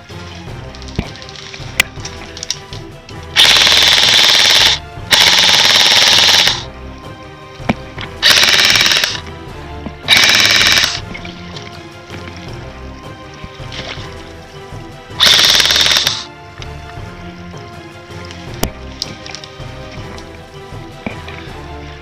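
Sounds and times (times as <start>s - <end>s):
airsoft gun full-auto bursts: 3.4s - 6.7s, 8.2s - 9.2s, 10.1s - 11.0s, 15.2s - 16.3s.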